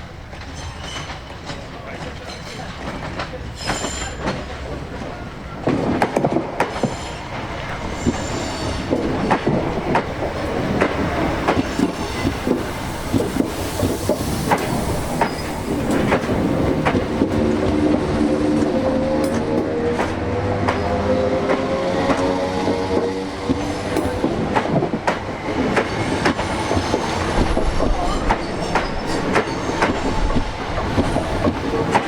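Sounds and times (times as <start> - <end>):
train wheels clicking over rail joints: 0.0 - 32.0
high wheel squeals: 3.6 - 4.3, 6.8 - 9.4, 11.6 - 16.0.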